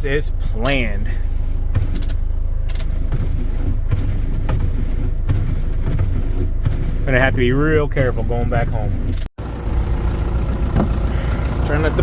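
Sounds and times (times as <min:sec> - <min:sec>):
vehicle engine idling: 0:00.0 - 0:12.0.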